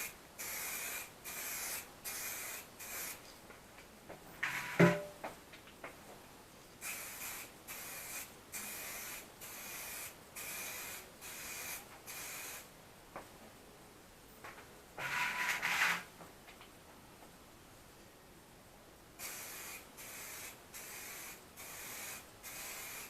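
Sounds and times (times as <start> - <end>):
aerosol spray can hissing: 0.0 - 3.2, 6.8 - 12.7, 19.2 - 23.0.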